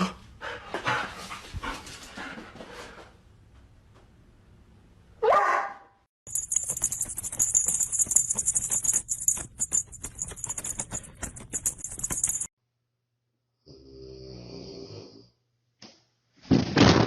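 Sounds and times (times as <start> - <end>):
rapid rattling of shaking: 6.3 - 12.5.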